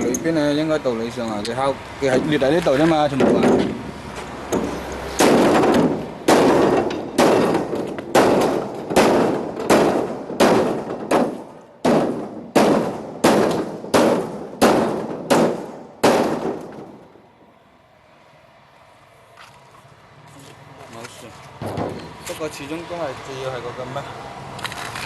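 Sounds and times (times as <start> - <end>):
hammer striking plastic hull: 4.5 - 17.0.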